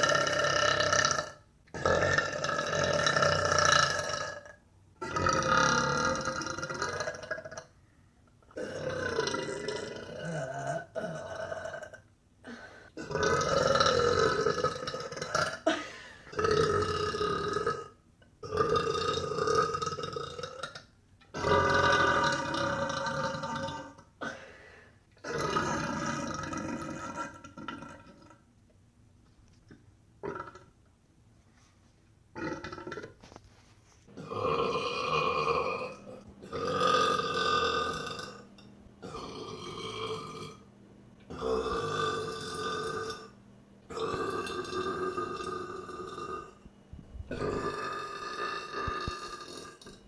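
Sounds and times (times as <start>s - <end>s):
woman burping: 8.6s - 20.8s, 47.3s - 50.0s.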